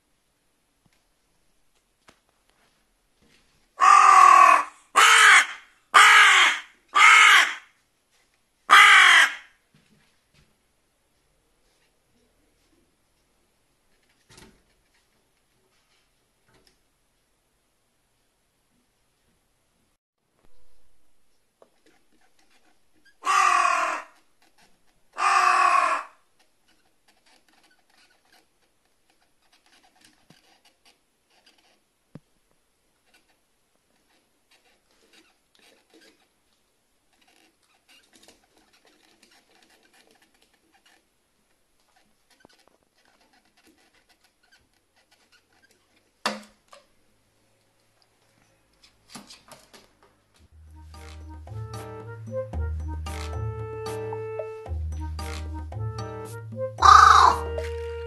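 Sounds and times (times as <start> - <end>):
crow cawing: 3.8 - 7.7, 8.7 - 9.5, 23.2 - 24.2, 25.1 - 26.2, 56.8 - 57.6.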